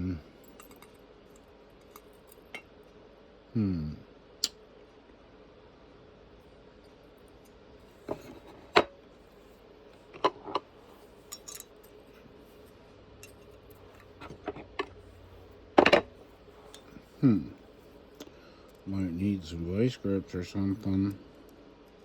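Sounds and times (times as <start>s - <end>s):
metal parts and tools clinking: 0.4s - 1.0s, 11.3s - 12.0s.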